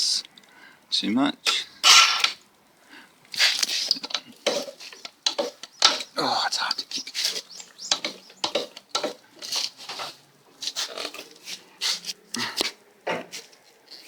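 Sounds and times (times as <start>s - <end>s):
dirt bike kickstarter clunks and scrapes: 1.8s - 2.4s, 3.4s - 6.2s, 6.9s - 14.0s.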